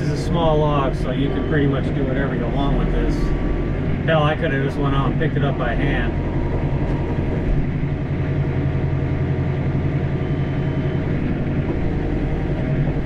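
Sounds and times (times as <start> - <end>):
tractor diesel engine running: 0.0 - 13.0.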